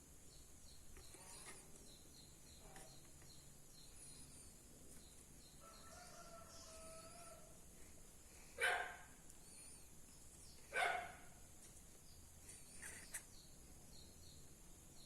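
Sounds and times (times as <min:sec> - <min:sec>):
dog barking: 0:08.6 - 0:09.1, 0:10.7 - 0:11.3.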